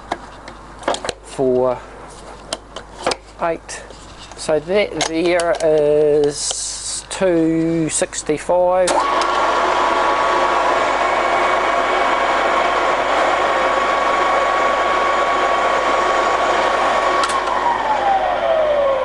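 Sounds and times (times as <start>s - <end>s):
drill motor whining: 8.9s - 19.0s.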